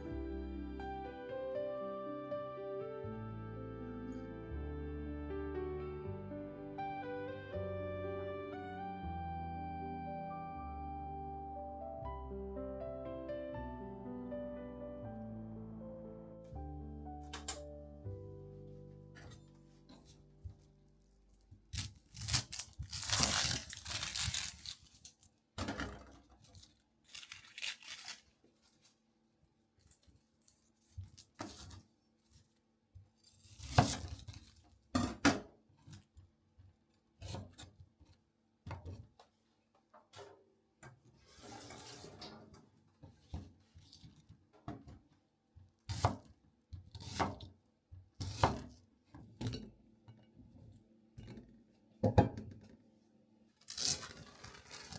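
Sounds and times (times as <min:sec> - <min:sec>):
packaging tearing and rustling: 0:21.2 - 0:25.4, 0:26.4 - 0:29.0, 0:33.4 - 0:34.6, 0:53.6 - 0:54.9.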